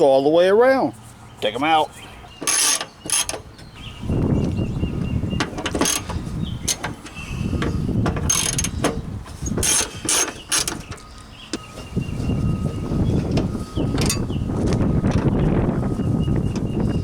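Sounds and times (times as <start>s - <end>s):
metal scraping: 2.3s - 4.3s, 5.2s - 16.0s
ratchet clicking: 2.4s - 3.5s, 5.4s - 11.0s.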